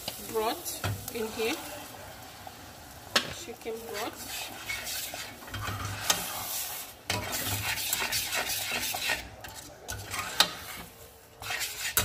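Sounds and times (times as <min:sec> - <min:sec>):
sauce sizzling: 0:00.0 - 0:12.0
utensil scraping a pan: 0:03.7 - 0:12.0.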